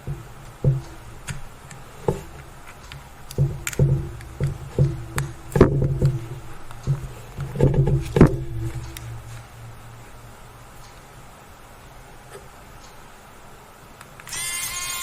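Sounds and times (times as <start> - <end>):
sharp percussive knocks: 0.0 - 2.6, 3.2 - 10.4.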